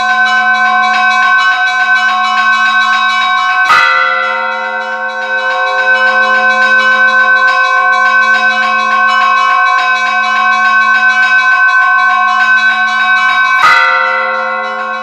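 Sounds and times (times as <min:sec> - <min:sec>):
small bells chiming fast: 0:00.0 - 0:15.0
large bell struck: 0:03.6 - 0:11.2, 0:11.9 - 0:15.0.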